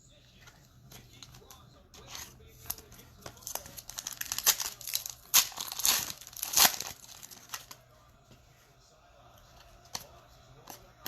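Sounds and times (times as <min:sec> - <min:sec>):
plastic wrapper tearing and crinkling: 0:02.1 - 0:07.8.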